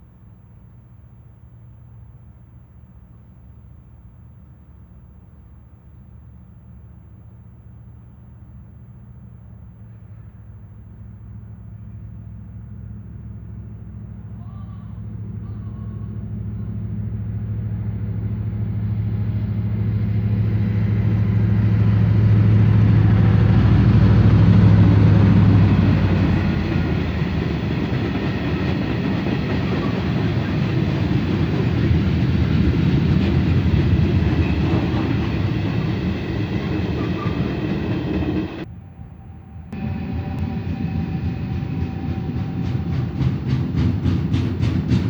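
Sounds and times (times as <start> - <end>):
diesel locomotive engine drone: 0.0 - 45.0
freight wagons rattling on track: 13.0 - 38.6, 39.8 - 45.0.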